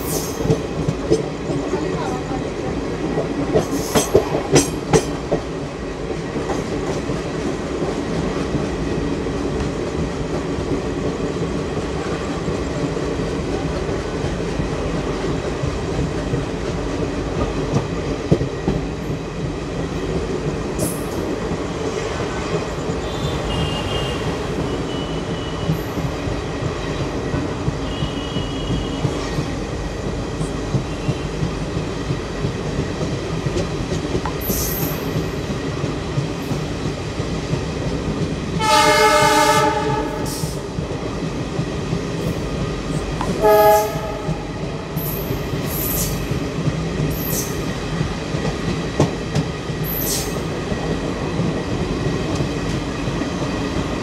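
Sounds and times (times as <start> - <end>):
train running along track: 0.0 - 54.0
locomotive horn blasts: 38.6 - 40.4, 43.4 - 44.5.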